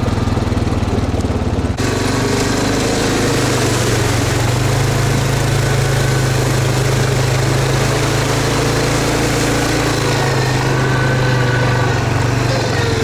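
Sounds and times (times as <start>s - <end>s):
car engine running steadily: 0.0s - 13.0s.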